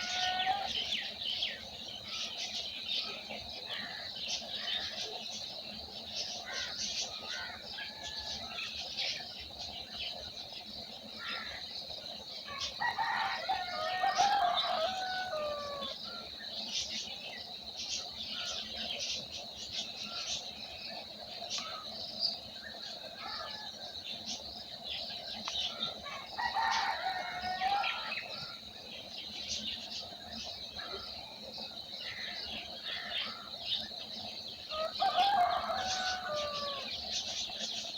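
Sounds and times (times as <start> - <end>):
rooster crowing: 0.0 - 0.8, 12.5 - 16.0, 26.1 - 28.4, 34.7 - 37.0
small birds chirping: 0.0 - 37.9.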